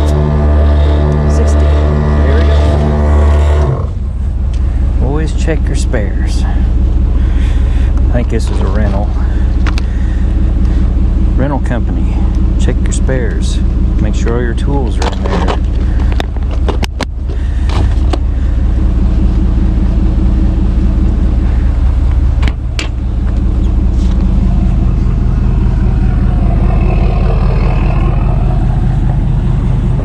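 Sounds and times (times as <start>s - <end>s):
vehicle engine idling: 0.0s - 30.0s.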